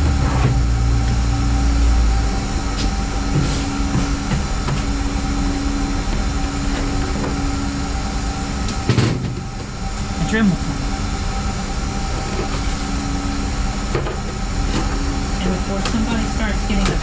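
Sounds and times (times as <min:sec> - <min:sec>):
low drone: 0:00.0 - 0:17.0
mechanical hum: 0:00.0 - 0:17.0.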